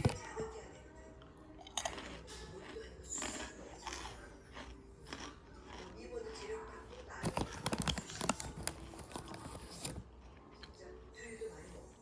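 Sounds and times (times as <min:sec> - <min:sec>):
crunching crusty bread: 0:01.6 - 0:11.0.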